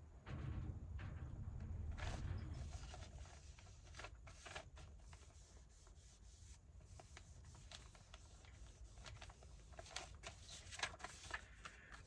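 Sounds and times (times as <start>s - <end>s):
low hum: 0.0s - 3.4s
paper rustling and clicking: 1.9s - 5.6s, 6.9s - 12.0s.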